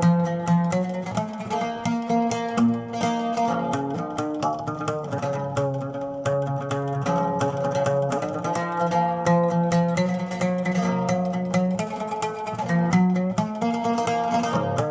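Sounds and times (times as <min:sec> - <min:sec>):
plucked string instrument melody: 0:00.0 - 0:14.9.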